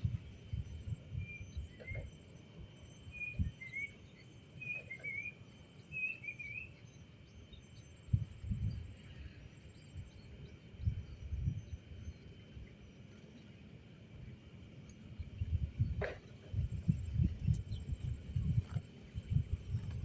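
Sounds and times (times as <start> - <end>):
birds chirping: 0.0 - 13.5.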